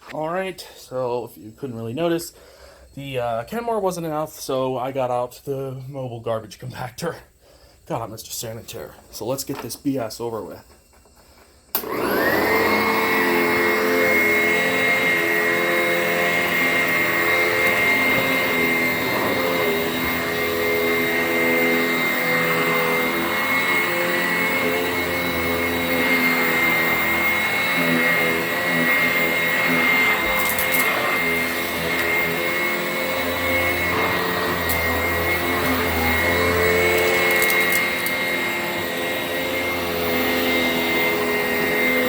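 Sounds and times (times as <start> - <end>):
upright vacuum cleaner running: 11.7 - 42.0.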